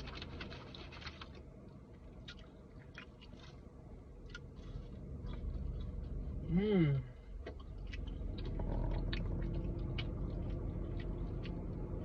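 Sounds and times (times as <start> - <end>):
person chewing food: 0.0 - 6.6, 7.2 - 12.0
low hum: 0.0 - 12.0.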